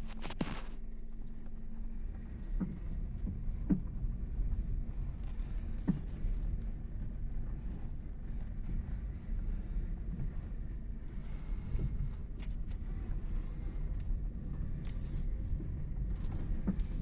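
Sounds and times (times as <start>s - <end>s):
low rumble of moving car: 0.0s - 17.0s.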